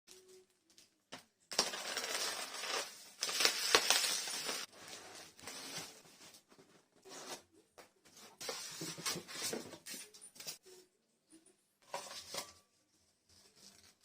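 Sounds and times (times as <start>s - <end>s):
packaging crinkling and tearing: 1.5s - 4.7s.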